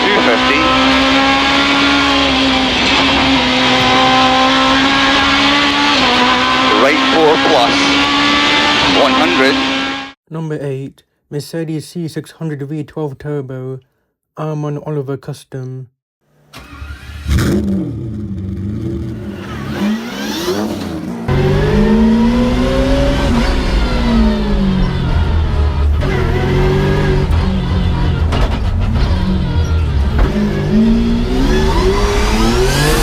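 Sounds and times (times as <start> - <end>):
car engine revving: 0.0 - 10.2, 16.6 - 33.0.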